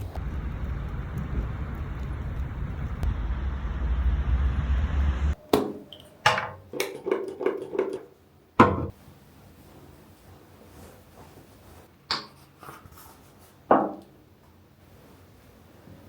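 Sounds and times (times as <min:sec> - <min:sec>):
low rumbling: 0:00.0 - 0:05.4
hard objects knocking: 0:06.3 - 0:08.9.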